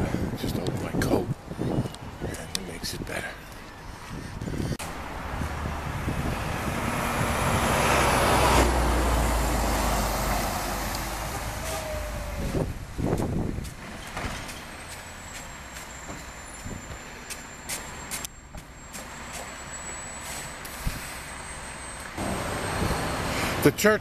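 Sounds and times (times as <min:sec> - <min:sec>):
heavy vehicle passing: 0:04.5 - 0:13.6, 0:22.1 - 0:23.8
short falling squeal: 0:11.3 - 0:12.6.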